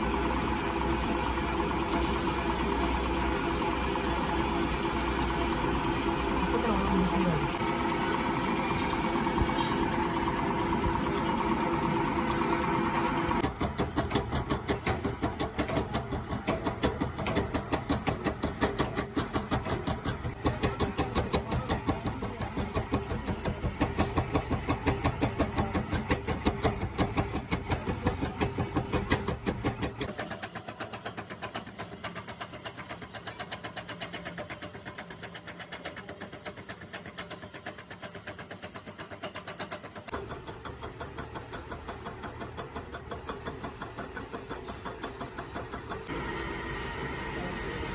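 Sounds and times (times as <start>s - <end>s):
machine pulsing beat: 13.4s - 46.1s.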